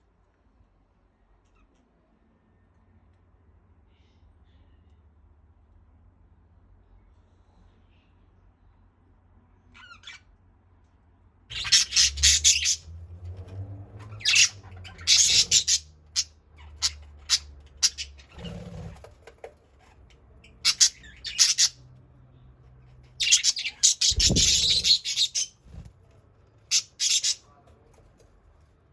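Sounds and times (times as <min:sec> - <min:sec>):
faint bird chirp: 0:01.1 - 0:05.3, 0:06.7 - 0:10.6
budgerigars squawking: 0:11.5 - 0:12.9, 0:14.2 - 0:18.7, 0:20.6 - 0:21.8, 0:23.2 - 0:25.5.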